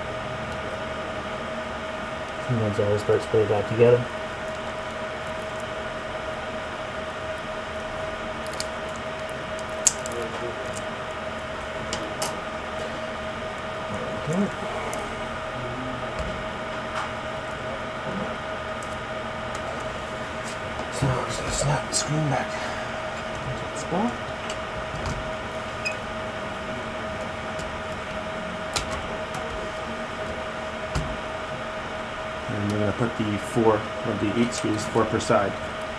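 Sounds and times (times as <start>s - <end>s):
electrical hum with hiss: 0.0s - 35.9s
plastic laptop parts clicking: 8.4s - 9.0s, 9.8s - 10.8s.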